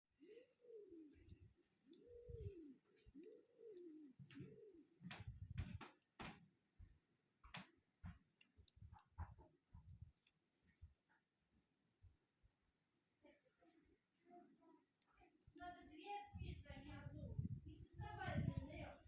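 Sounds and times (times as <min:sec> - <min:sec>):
bird cooing: 0:00.2 - 0:05.8
faint clicks and taps: 0:00.2 - 0:12.2.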